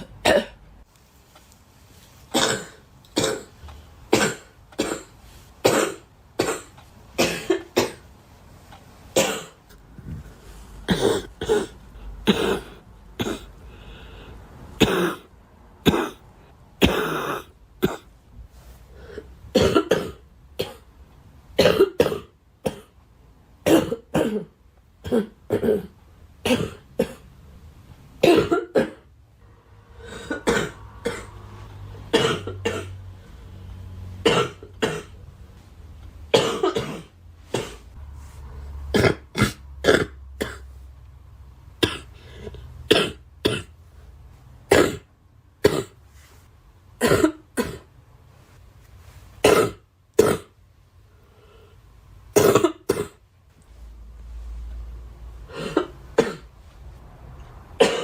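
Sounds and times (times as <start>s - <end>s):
girl coughing: 0.0s - 0.6s, 2.3s - 8.0s, 9.2s - 9.6s, 10.9s - 13.5s, 14.8s - 16.2s, 16.8s - 18.1s, 19.5s - 20.9s, 21.6s - 23.0s, 23.6s - 27.2s, 28.2s - 29.1s, 30.0s - 31.4s, 32.1s - 33.0s, 34.3s - 35.2s, 36.3s - 37.9s, 38.9s - 40.7s, 41.8s - 42.2s, 42.9s - 43.7s, 44.7s - 46.0s, 47.0s - 47.9s, 49.4s - 50.6s, 52.3s - 53.2s, 55.5s - 56.5s, 57.8s - 58.0s.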